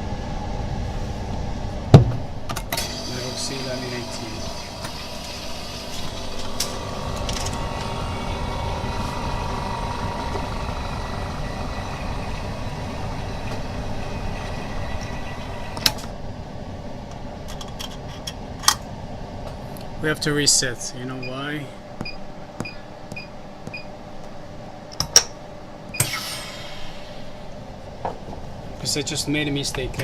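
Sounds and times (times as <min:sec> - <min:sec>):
laminator machine humming: 0:00.0 - 0:30.0
high hiss: 0:26.0 - 0:27.8.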